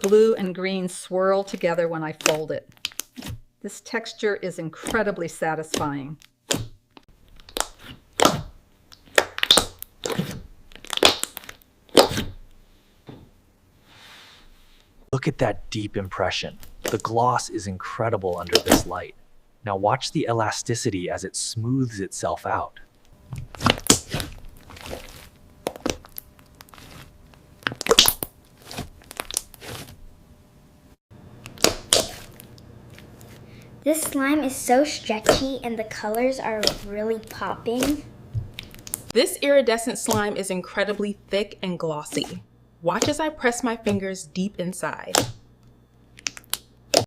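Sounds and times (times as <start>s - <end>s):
slime squishing: 1.5s - 3.4s, 4.8s - 12.4s, 18.4s - 19.0s, 23.2s - 30.0s, 31.4s - 39.2s, 39.9s - 44.1s, 46.1s - 47.0s
slime squeezed by hand: 23.4s - 30.0s.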